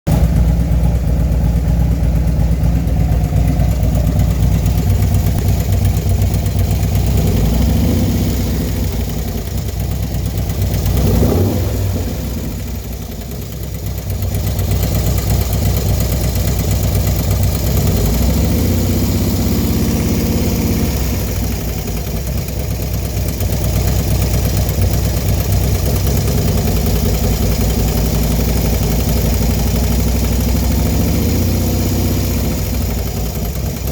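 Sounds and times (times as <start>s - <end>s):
engine clicking noise: 0.1s - 33.9s
small engine idling: 0.1s - 33.9s.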